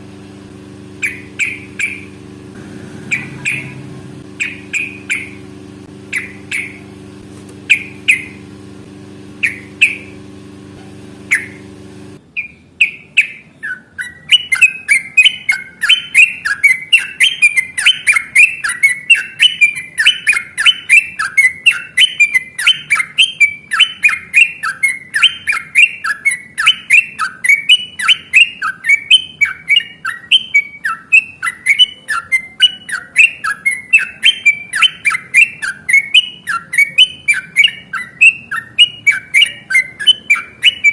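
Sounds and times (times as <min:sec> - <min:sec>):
steady low hum: 0:00.0 - 0:12.4
bird calling: 0:00.8 - 0:08.6, 0:09.3 - 0:10.3, 0:11.2 - 0:40.9
bird chattering song: 0:01.0 - 0:02.2, 0:03.0 - 0:05.5, 0:06.1 - 0:06.9, 0:07.6 - 0:08.5, 0:09.4 - 0:10.2, 0:11.3 - 0:40.9.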